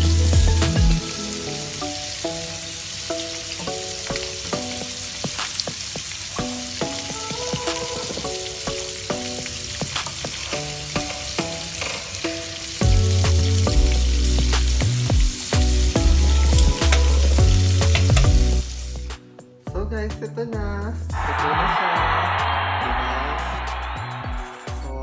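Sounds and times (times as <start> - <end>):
heavy bass line: 0.0 - 1.0, 12.8 - 25.0
food frying in hot oil: 0.0 - 19.2
background music: 0.0 - 25.0.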